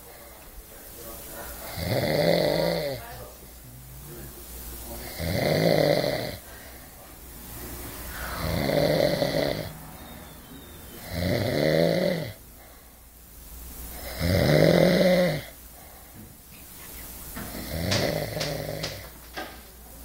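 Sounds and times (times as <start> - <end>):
loud snoring: 1.7 - 3.0, 5.0 - 6.5, 7.5 - 12.4, 13.9 - 15.6, 17.5 - 19.1.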